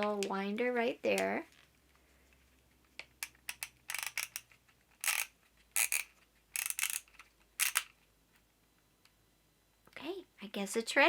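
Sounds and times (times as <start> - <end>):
camera film advance ratcheting clicks: 3.5 - 4.4, 5.0 - 7.8.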